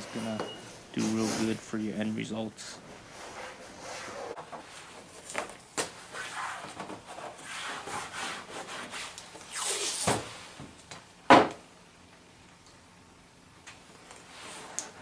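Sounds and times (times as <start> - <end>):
masking tape rasping off roll: 5.8 - 10.2.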